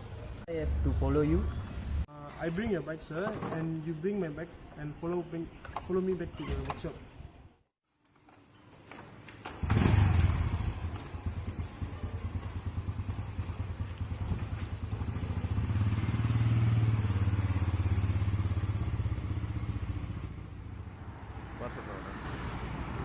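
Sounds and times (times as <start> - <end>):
motorcycle engine running: 9.6 - 20.9.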